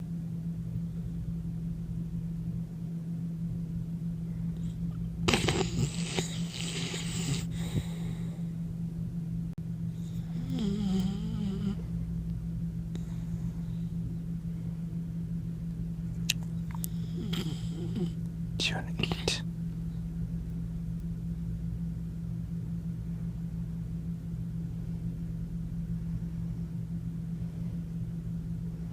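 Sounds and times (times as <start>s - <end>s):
steady low hum: 0.0s - 28.9s
puppy snoring: 4.5s - 8.4s, 9.9s - 12.0s, 16.6s - 18.2s
puppy snorting breaths: 4.7s - 8.5s, 16.8s - 18.2s.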